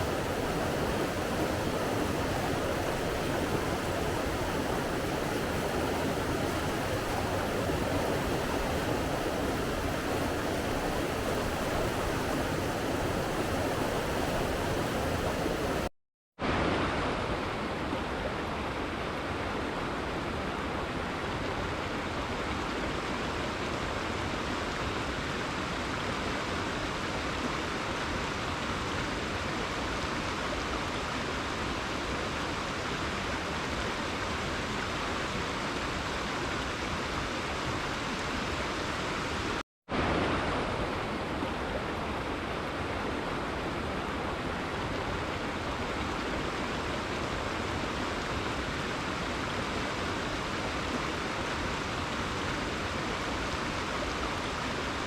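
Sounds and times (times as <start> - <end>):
sea waves and surf: 0.0 - 25.1, 33.6 - 55.0.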